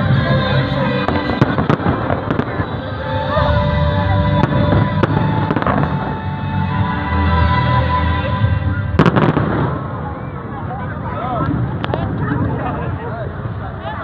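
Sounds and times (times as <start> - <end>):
music playing: 0.0 - 9.5
fireworks sharp cracks: 1.0 - 2.9, 9.0 - 10.3
fireworks booming: 1.0 - 3.2, 4.2 - 6.2, 9.0 - 10.5.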